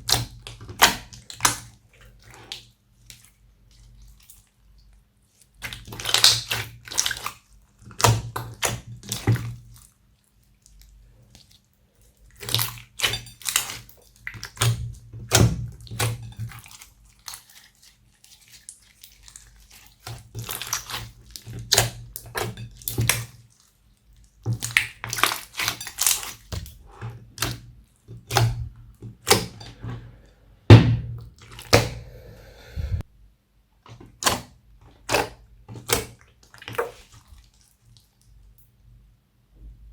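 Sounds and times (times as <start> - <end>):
slime squelching and popping: 5.5 - 9.9, 12.3 - 23.7, 24.4 - 29.8, 33.9 - 38.2.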